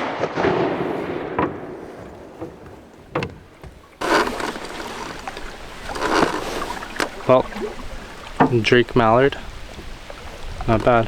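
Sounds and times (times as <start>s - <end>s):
shotgun blasts with echo: 0.0s - 2.6s.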